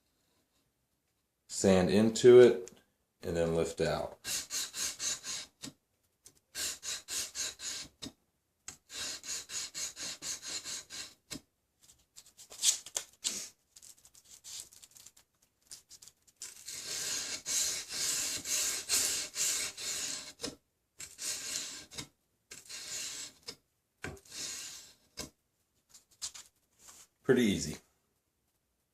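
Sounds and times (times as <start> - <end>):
sandpaper rubbing on knife blade: 4.2 - 5.6, 6.5 - 8.0, 8.9 - 11.2, 16.4 - 20.4, 21.0 - 23.5, 24.2 - 25.0.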